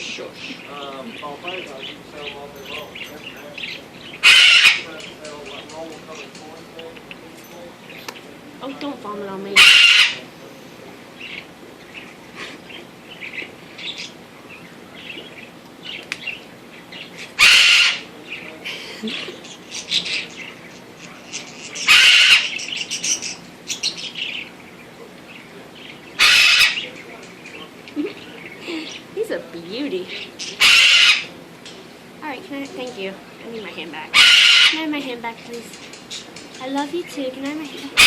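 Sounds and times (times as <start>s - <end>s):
parrot squawking: 0.4s - 5.0s, 9.5s - 10.3s, 11.2s - 18.5s, 19.2s - 20.7s, 21.4s - 24.6s, 25.8s - 29.1s, 30.1s - 31.4s, 34.0s - 35.0s
soft chirps and clicks: 15.1s - 16.4s.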